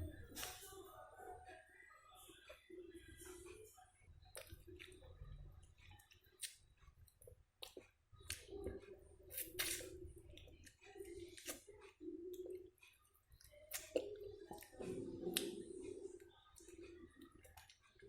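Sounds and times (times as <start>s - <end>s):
person chewing food: 4.3s - 18.0s.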